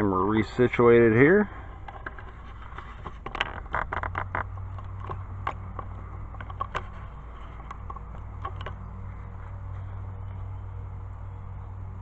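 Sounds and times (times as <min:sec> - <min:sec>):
steady low hum: 0:00.0 - 0:12.0
camera handling clicks and knocks: 0:04.3 - 0:06.9.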